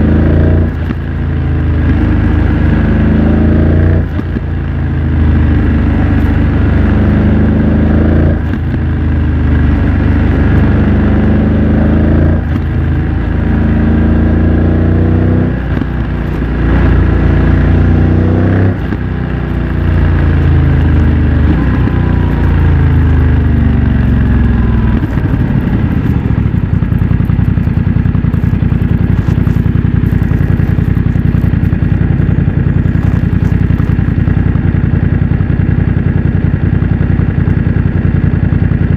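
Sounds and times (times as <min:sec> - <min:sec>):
motorcycle engine accelerating: 0:00.0 - 0:38.9
motorcycle engine idling: 0:18.7 - 0:38.9.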